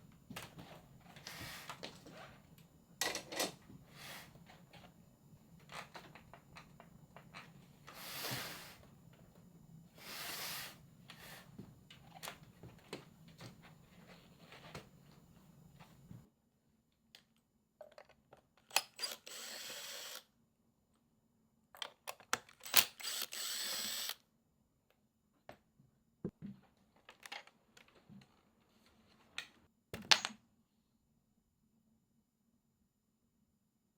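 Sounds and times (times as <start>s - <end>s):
impact driver whirring: 18.9s - 20.2s, 22.6s - 24.2s.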